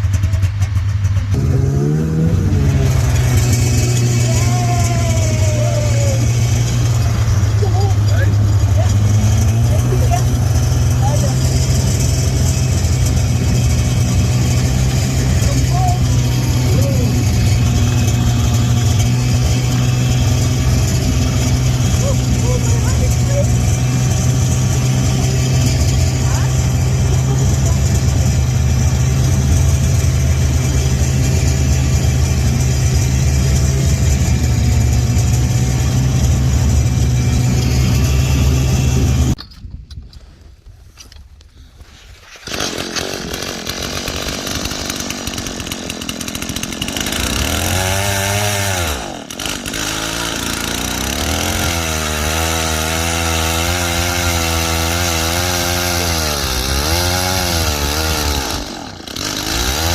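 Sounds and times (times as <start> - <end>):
snowmobile engine revving: 0.0 - 39.4, 42.3 - 59.9.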